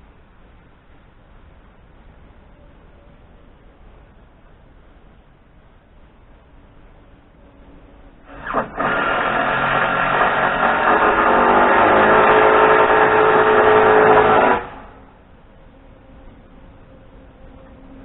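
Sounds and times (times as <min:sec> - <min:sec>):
motor-driven machine running: 0:08.3 - 0:15.1.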